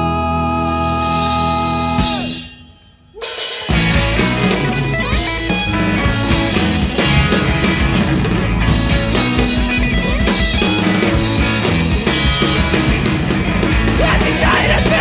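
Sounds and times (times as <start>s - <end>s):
person singing: 0.0s - 3.7s, 14.0s - 15.0s
distorted electric guitars: 0.0s - 15.0s
drum kit: 0.0s - 15.0s.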